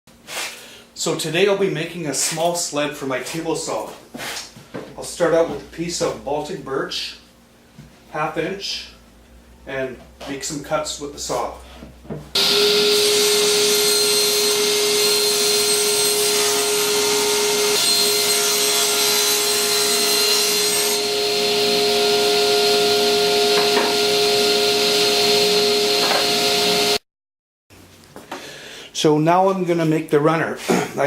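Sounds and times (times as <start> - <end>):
table saw cutting plywood: 12.4 - 27.0.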